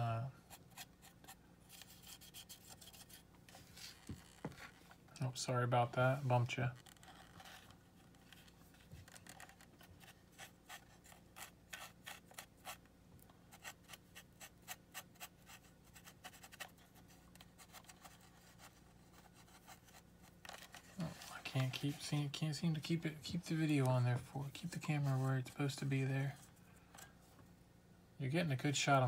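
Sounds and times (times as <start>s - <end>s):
low steady hum: 0.0s - 29.0s
cotton swab scratching metal contacts: 6.8s - 12.9s, 13.5s - 20.9s.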